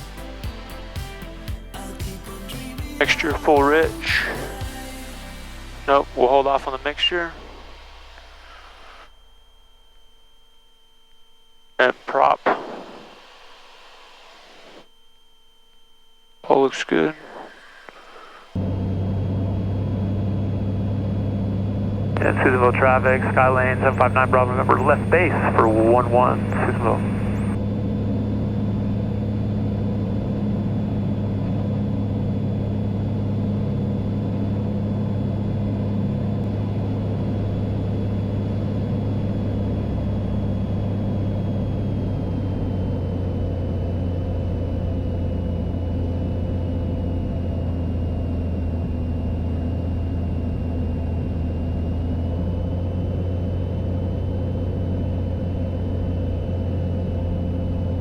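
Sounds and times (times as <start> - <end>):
aircraft engine and propeller droning: 2.8 - 10.0, 16.7 - 58.0.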